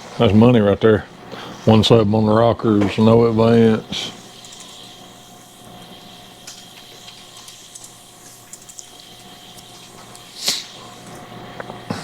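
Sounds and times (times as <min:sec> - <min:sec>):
machinery hum: 0:00.0 - 0:12.0
loud hiss: 0:02.7 - 0:12.0.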